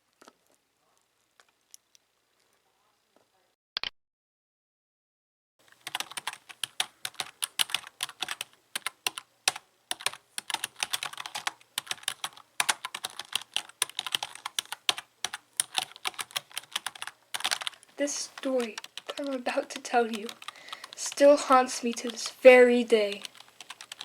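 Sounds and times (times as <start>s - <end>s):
computer keyboard typing: 5.8s - 24.0s.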